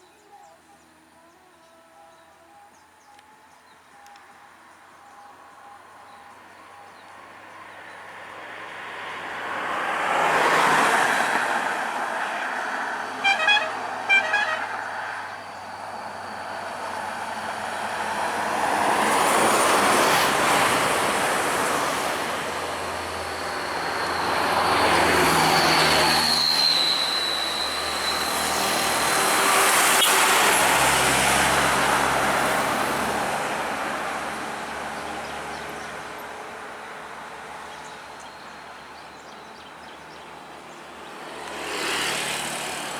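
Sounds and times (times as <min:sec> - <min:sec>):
heavy vehicles passing: 0:07.3 - 0:42.9
horn toots: 0:13.2 - 0:15.0, 0:26.3 - 0:31.1
thin high whine: 0:22.5 - 0:31.3.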